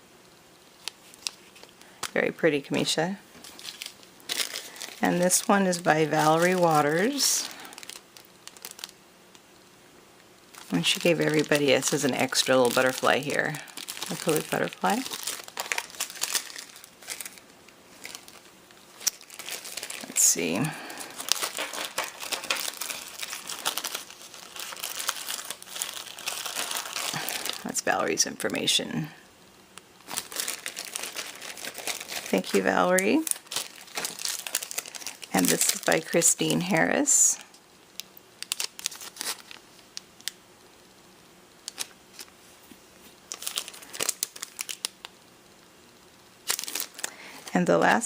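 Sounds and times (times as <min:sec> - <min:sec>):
packaging crinkling and rustling: 0:00.6 - 0:09.4, 0:10.5 - 0:29.1, 0:29.8 - 0:40.4, 0:41.6 - 0:45.2, 0:46.4 - 0:47.7.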